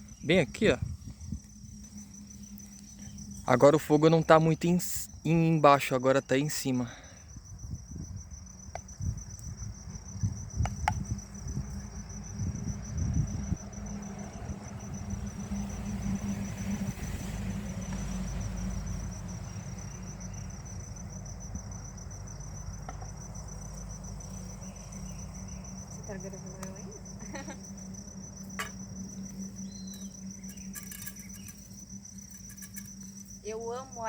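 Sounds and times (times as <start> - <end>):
low rumble: 0.0 - 4.6
crickets chirping: 0.0 - 34.0.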